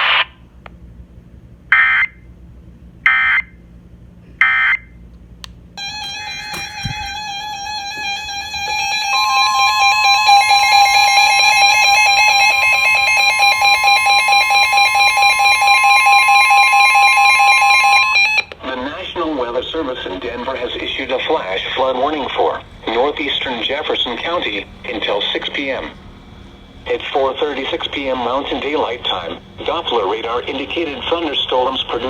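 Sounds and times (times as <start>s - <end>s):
pulsing electronic alert tone: 5.8s - 18.4s
higher electronic tone: 5.8s - 18.5s
screeching digital data bursts: 8.8s - 18.4s.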